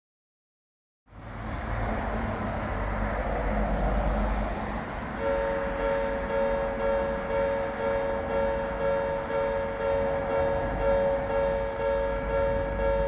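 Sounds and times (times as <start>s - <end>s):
road traffic rumble: 1.1s - 13.0s
level crossing warning bell: 5.0s - 13.0s.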